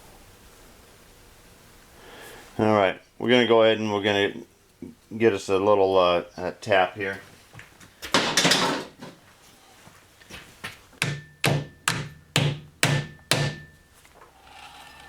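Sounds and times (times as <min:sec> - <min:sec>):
hammer tapping metal: 0:11.0 - 0:13.9.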